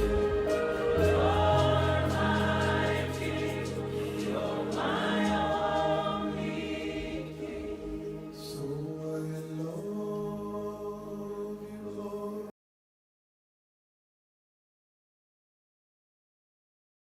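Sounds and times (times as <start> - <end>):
sustained chords: 0.0 - 8.9
voices singing held notes: 0.0 - 12.4.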